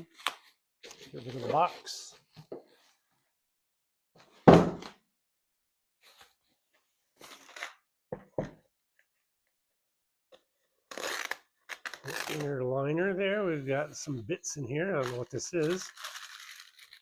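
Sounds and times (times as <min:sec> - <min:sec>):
cardboard box thump: 0:04.5 - 0:04.9
packaging rustling: 0:15.1 - 0:17.0.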